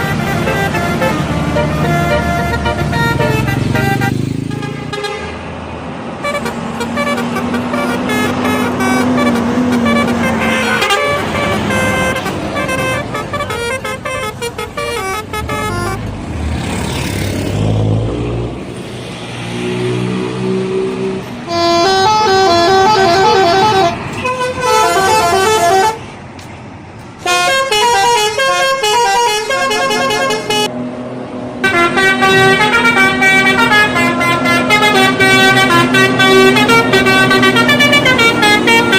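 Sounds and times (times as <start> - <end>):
bus air horn playing melody: 0.0 - 5.4, 6.2 - 16.0, 21.4 - 26.1, 27.2 - 30.7, 31.6 - 38.9.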